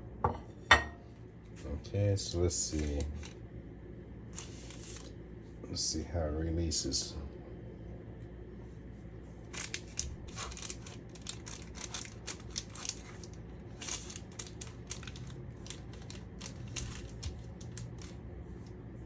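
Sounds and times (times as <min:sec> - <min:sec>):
steady low hum: 0:00.0 - 0:19.0
breadcrumbs crackling and crunching: 0:02.2 - 0:03.4, 0:09.3 - 0:18.8.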